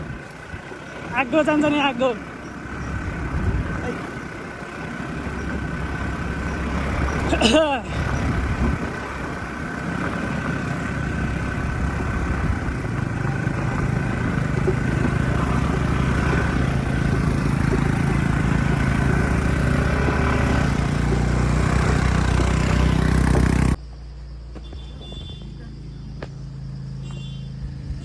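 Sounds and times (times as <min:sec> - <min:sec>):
vehicle engine running: 0:00.0 - 0:28.0.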